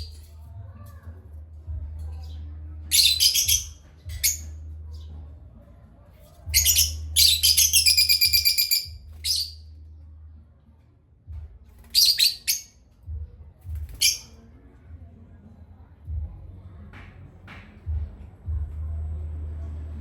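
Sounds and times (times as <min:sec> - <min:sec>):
parrots chirping: 0:06.6 - 0:09.6
steady low hum: 0:13.0 - 0:20.0.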